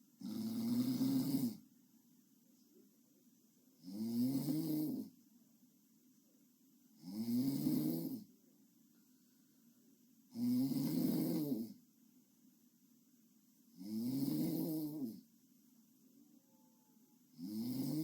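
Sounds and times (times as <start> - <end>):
person snoring with buzzing tone: 0.2 - 1.6, 3.8 - 5.1, 7.0 - 8.3, 10.3 - 11.8, 13.7 - 15.2, 17.3 - 18.0
quiet breathing: 8.9 - 10.0.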